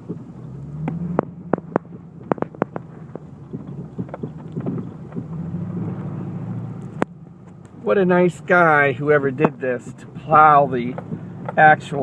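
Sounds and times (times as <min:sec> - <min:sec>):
low engine hum: 0:00.0 - 0:12.0
sharp clicks and knocks: 0:00.8 - 0:05.4, 0:06.8 - 0:07.8, 0:10.9 - 0:11.7.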